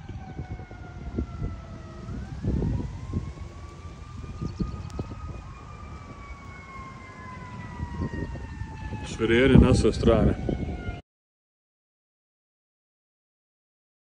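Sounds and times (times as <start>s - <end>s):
emergency sirens wailing: 0.0s - 11.0s.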